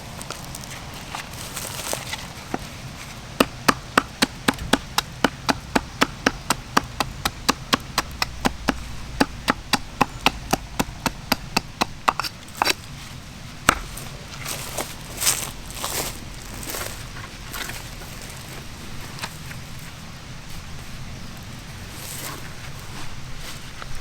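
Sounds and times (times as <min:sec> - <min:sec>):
tool striking wood: 0:03.4 - 0:12.8, 0:13.7 - 0:14.1.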